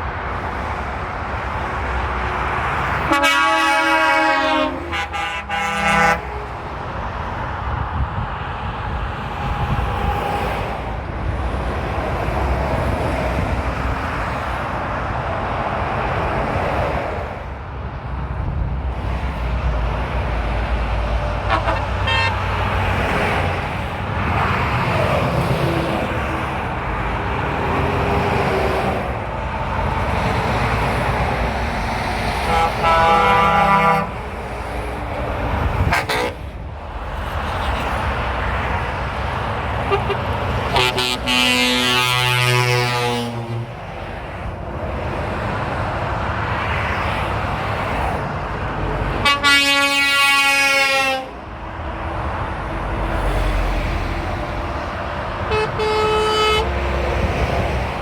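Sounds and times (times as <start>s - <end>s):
lorries passing on motorway: 0.0s - 58.0s
truck horn blast: 2.9s - 6.5s, 21.4s - 22.8s, 32.4s - 34.3s, 35.8s - 36.4s, 39.8s - 43.6s, 49.2s - 51.4s, 55.4s - 57.0s.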